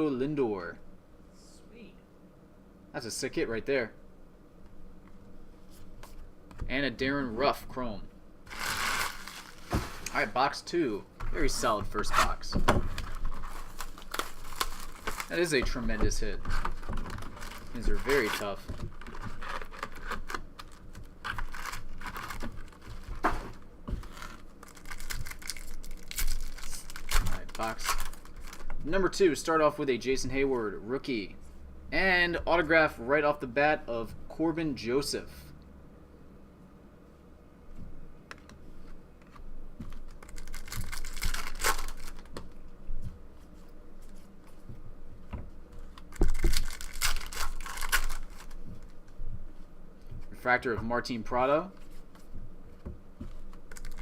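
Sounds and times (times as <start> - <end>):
foil wrapper crinkling and tearing: 8.5 - 10.2, 12.2 - 28.9, 39.9 - 42.5, 45.9 - 49.0, 53.5 - 54.0
rustling: 8.5 - 10.3.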